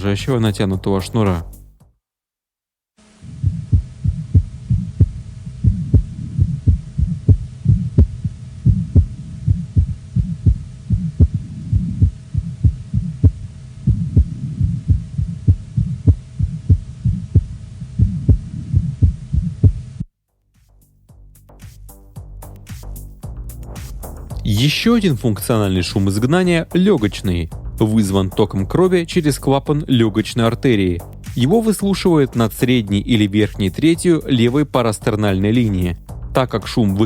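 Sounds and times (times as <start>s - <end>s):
low vibratory heart murmur: 3.2s - 20.1s
heartbeat sounds: 3.3s - 20.0s.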